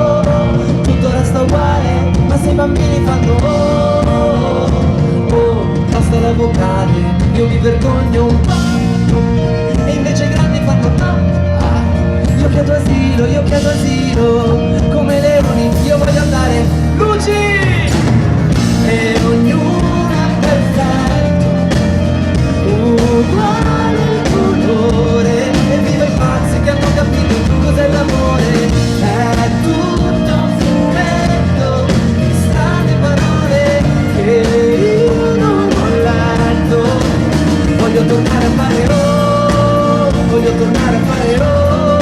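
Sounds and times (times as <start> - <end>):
live pop-rock band music: 0.0 - 42.0.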